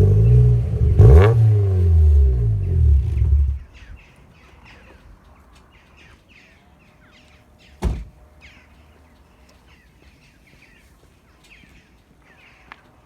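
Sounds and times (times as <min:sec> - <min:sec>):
car engine: 0:00.0 - 0:03.6
small birds chirping: 0:02.3 - 0:13.0
loud thud: 0:07.8 - 0:08.1.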